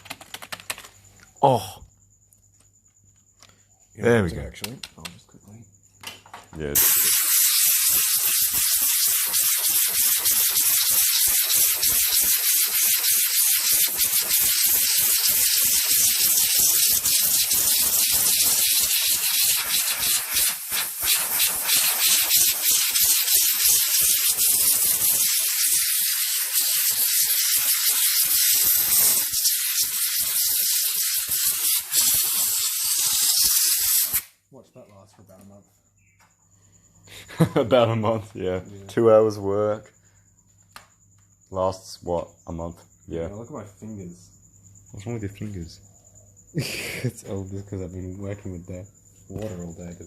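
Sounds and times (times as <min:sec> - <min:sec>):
loud rasping hiss: 0:06.8 - 0:34.4.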